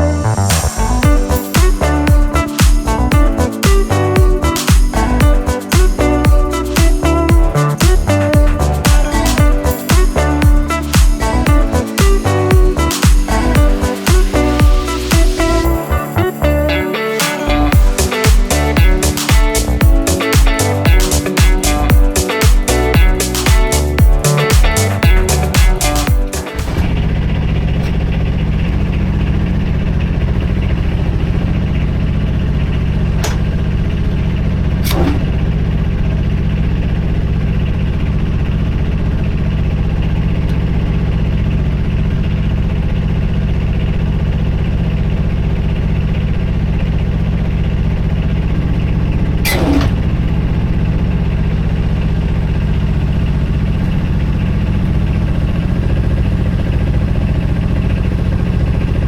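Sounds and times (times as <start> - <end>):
engine idling: 22.8 - 59.0.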